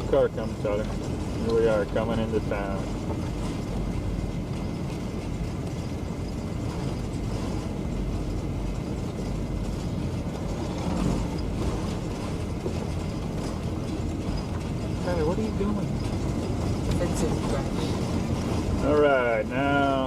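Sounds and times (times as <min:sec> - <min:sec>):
vehicle engine and road noise: 0:00.0 - 0:20.0.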